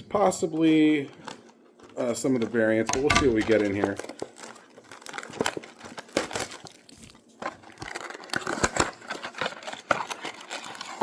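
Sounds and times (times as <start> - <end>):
wrapper and cardboard crinkling: 3.5 - 11.0.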